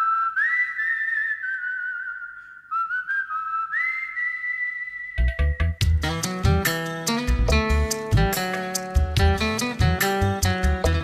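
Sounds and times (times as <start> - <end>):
whistled melody: 0.0 - 11.0
strummed acoustic guitar: 5.8 - 11.0.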